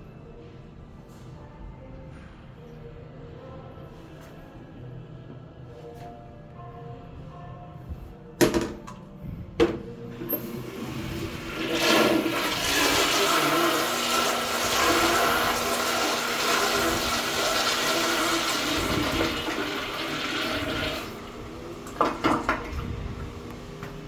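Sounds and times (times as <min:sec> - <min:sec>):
toilet flushing: 0:09.6 - 0:24.0
toilet tank refilling: 0:09.6 - 0:24.0.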